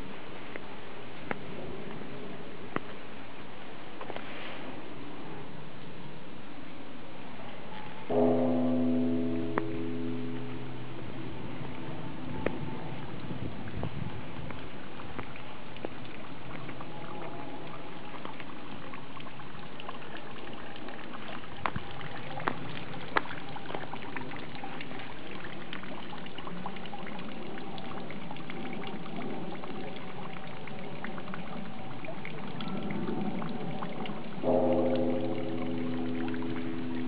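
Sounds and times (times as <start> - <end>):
water pouring and trickling: 7.6 - 37.0
ringing multi-pitch tone: 8.1 - 13.2, 34.4 - 37.0
sharp drips: 8.1 - 37.0.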